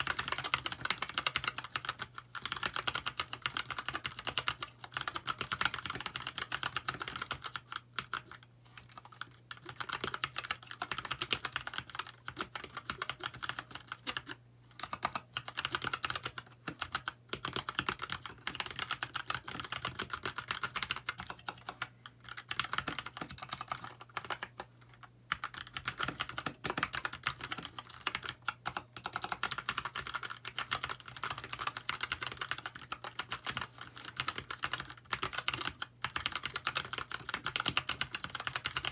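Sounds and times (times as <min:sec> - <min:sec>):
fast typing on mechanical keyboard: 0:00.0 - 0:38.9.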